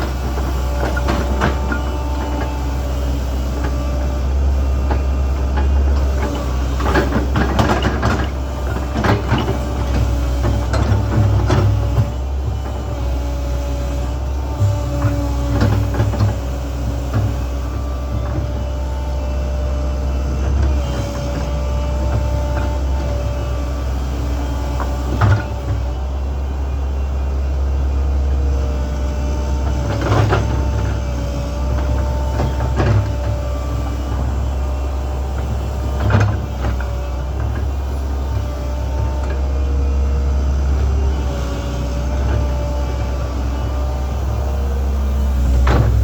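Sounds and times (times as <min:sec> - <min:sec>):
excavator bucket clunks: 0:00.0 - 0:02.6, 0:03.6 - 0:13.1, 0:14.2 - 0:18.9, 0:24.6 - 0:26.0, 0:29.5 - 0:40.1, 0:42.1 - 0:46.0
hydraulic whine: 0:00.0 - 0:19.4
excavator diesel engine running: 0:00.0 - 0:46.0.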